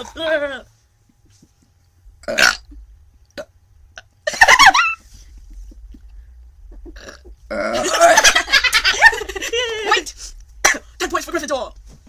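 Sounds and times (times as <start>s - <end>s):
person burping: 2.2s - 4.1s, 6.7s - 8.3s.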